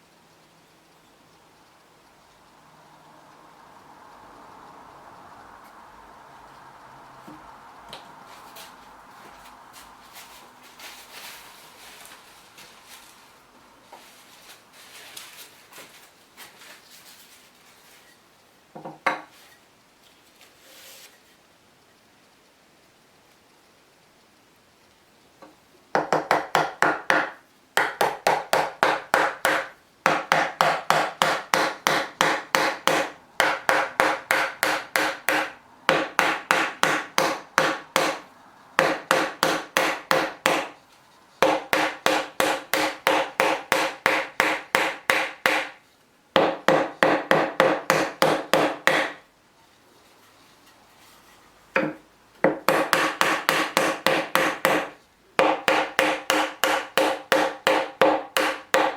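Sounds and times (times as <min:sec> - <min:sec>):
hand tool strokes on wood: 0:07.2 - 0:18.2, 0:20.5 - 0:21.3.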